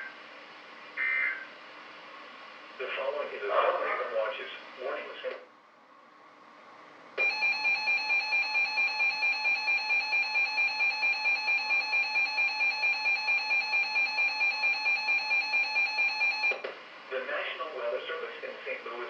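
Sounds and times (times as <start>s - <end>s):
shrill electronic alarm beeping: 7.2s - 16.6s.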